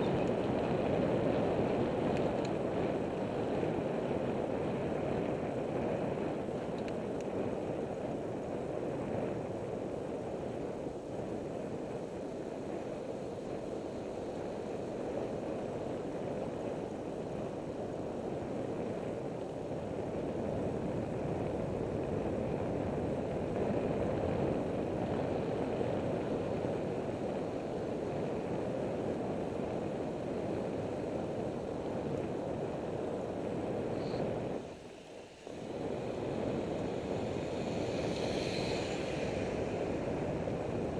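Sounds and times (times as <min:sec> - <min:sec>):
bicycle road noise: 0:00.0 - 0:40.9
wind rushing over microphone: 0:00.0 - 0:40.9.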